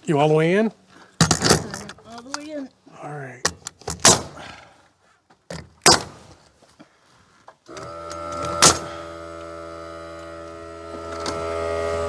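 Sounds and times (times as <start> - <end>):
small motor humming: 7.7 - 12.0.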